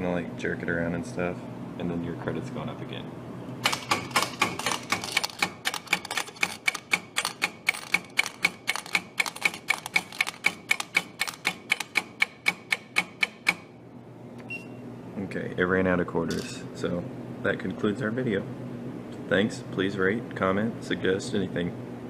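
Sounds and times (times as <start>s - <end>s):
coins dropping into metal cup: 3.7s - 11.5s.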